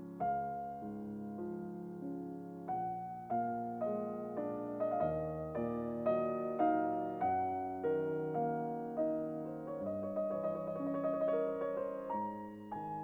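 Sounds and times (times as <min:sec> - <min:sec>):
slow gentle piano melody: 0:00.0 - 0:13.0.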